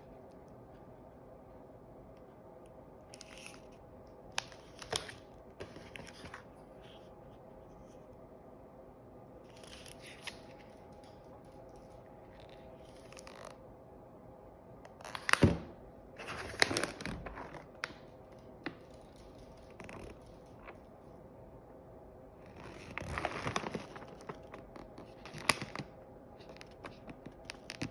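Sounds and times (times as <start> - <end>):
faint steady hum: 0.0 - 27.9
packaging rustling: 16.2 - 18.1, 22.6 - 27.9.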